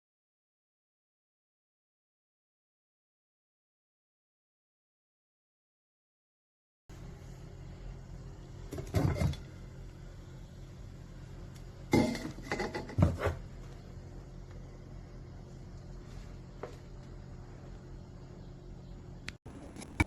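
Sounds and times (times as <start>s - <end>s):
steady low hum: 6.9s - 20.0s
kitchenware clattering: 12.0s - 13.4s.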